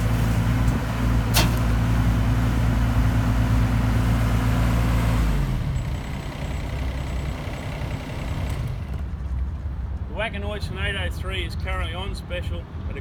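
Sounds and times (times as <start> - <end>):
excavator diesel engine: 0.0 - 9.3.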